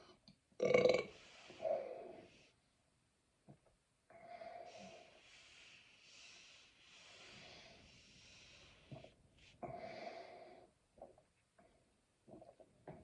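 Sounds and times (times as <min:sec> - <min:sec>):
person breathing noisily: 0:04.2 - 0:10.7.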